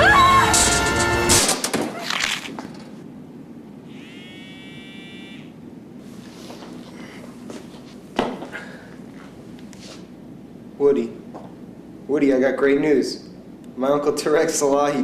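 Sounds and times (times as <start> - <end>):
phone alert buzzing tone: 3.9 - 5.6.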